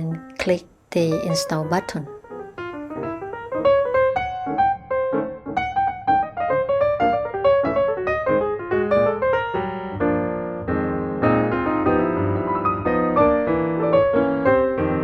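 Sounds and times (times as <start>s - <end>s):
piano melody over chords: 0.0s - 15.0s.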